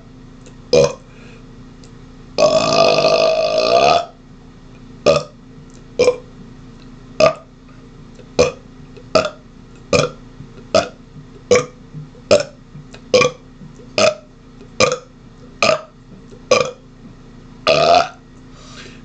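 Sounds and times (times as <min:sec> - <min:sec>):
man burping: 0:00.7 - 0:01.0, 0:02.4 - 0:04.1, 0:06.0 - 0:06.2, 0:08.4 - 0:12.6, 0:13.2 - 0:13.4, 0:14.0 - 0:14.2, 0:14.8 - 0:15.9, 0:16.5 - 0:16.8, 0:17.7 - 0:18.2.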